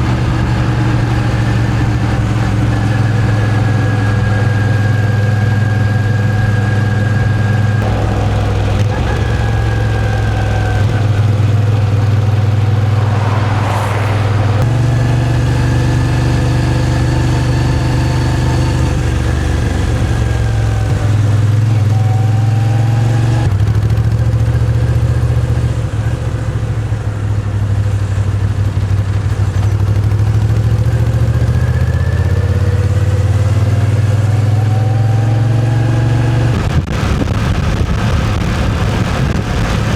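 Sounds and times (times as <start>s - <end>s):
motorcycle engine running: 0.0s - 39.9s
short rush of noise: 7.8s - 16.8s.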